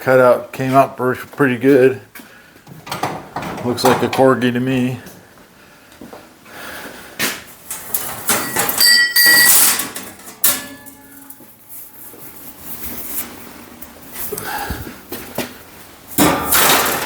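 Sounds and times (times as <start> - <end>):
steel sheet clanking and scraping: 2.7 - 4.6, 7.7 - 12.1, 16.2 - 17.0
bright metallic ring: 8.4 - 12.3.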